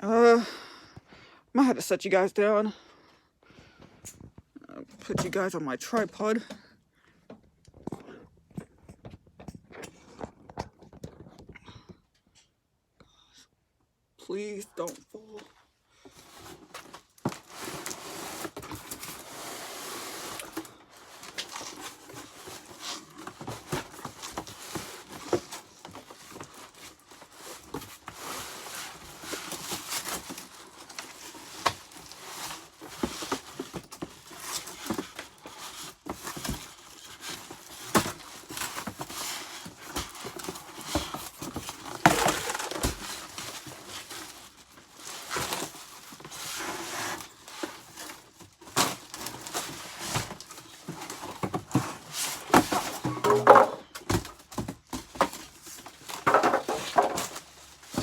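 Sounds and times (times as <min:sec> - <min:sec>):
packaging rustling and crinkling: 0:16.1 - 0:58.0.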